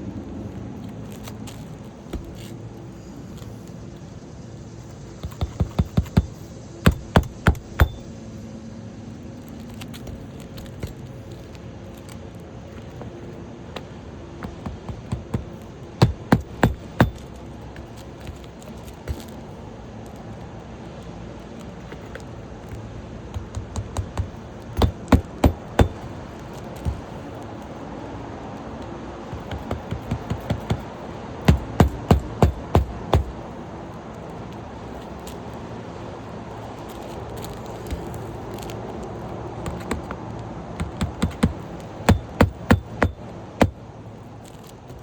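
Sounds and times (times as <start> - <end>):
hammer striking nails: 5.2 - 8.2, 14.4 - 18.5, 23.3 - 27.2, 29.3 - 33.5, 39.6 - 40.2, 40.8 - 43.8.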